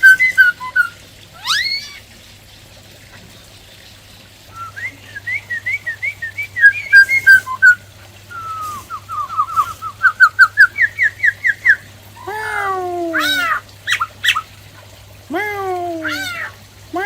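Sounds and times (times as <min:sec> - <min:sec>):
bird singing whistled notes: 0:00.0 - 0:01.8, 0:04.5 - 0:11.8.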